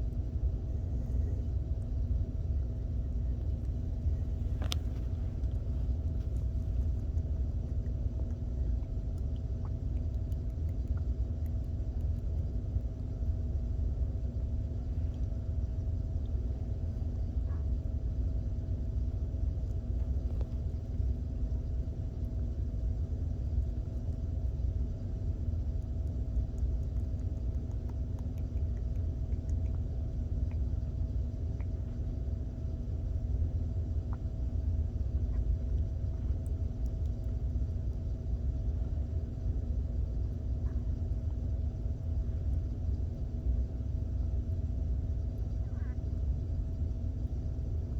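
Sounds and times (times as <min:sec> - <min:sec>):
faint hum: 0:00.0 - 0:47.9
low rumble: 0:00.0 - 0:47.9
faint soft clicks: 0:03.4 - 0:07.3.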